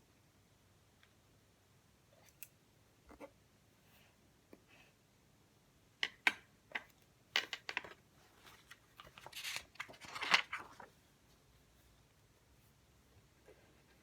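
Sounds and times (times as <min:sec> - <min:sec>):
paper rustling: 0:08.3 - 0:11.0.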